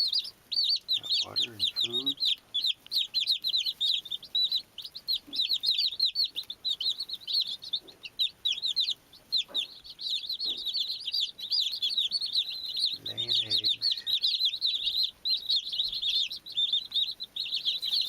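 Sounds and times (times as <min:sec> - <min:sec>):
baby chicks peeping: 0:00.0 - 0:18.0.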